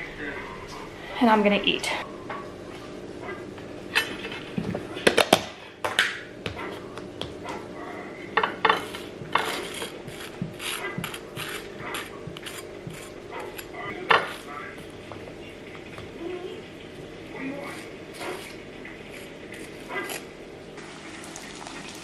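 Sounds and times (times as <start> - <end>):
utensils clinking against dishes: 3.2 - 5.3, 8.4 - 14.4.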